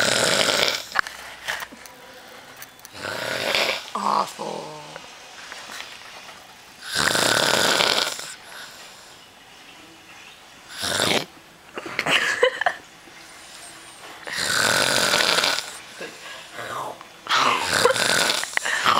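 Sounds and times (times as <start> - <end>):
man snoring loudly: 0.0 - 1.0, 2.9 - 4.2, 6.8 - 8.4, 10.7 - 11.3, 14.2 - 15.8, 16.6 - 18.9.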